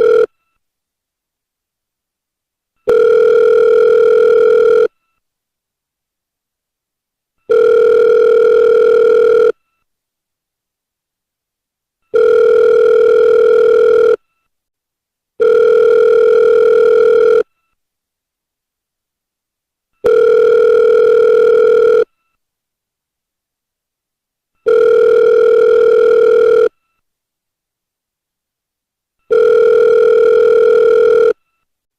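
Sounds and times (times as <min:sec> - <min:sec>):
buzzy telephone ringback tone: 0:00.0 - 0:00.3, 0:02.9 - 0:05.0, 0:07.5 - 0:09.6, 0:12.1 - 0:14.2, 0:15.4 - 0:17.5, 0:20.0 - 0:22.1, 0:24.6 - 0:26.7, 0:29.3 - 0:31.4.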